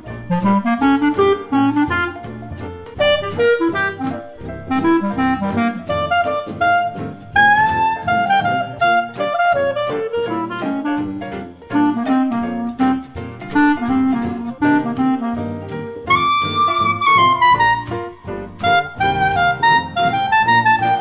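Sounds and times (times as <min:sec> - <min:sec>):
bass line: 0:00.0 - 0:21.0
light drums: 0:00.0 - 0:21.0
saxophone and brass runs: 0:00.0 - 0:21.0.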